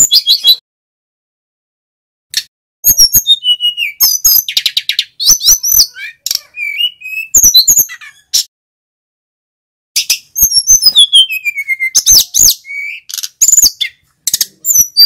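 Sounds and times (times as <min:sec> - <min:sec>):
flycatcher singing: 0:10.0 - 0:15.0.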